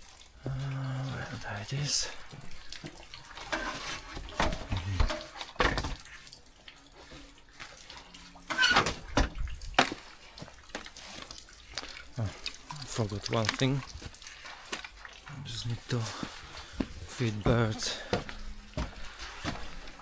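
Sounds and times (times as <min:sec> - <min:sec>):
rustling: 0:16.0 - 0:20.0.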